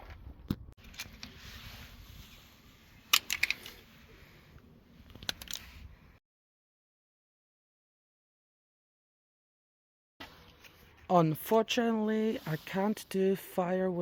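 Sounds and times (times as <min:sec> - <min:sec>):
plastic controller clicks and rattles: 0:03.1 - 0:03.7.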